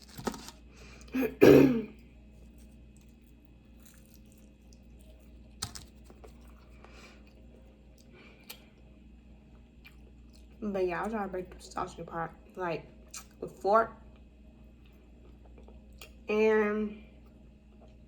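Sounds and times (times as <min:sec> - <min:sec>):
person chewing food: 0:00.0 - 0:01.2, 0:02.0 - 0:10.6, 0:14.1 - 0:16.2, 0:17.2 - 0:18.0.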